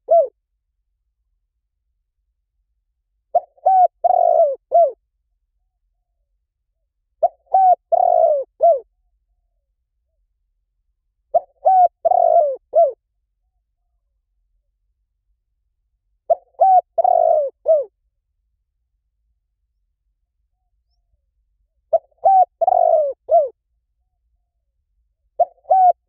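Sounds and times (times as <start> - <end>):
dove cooing: 0.0 - 0.3, 3.3 - 5.0, 7.2 - 8.9, 11.3 - 13.0, 16.3 - 17.9, 21.9 - 23.6, 25.4 - 26.0.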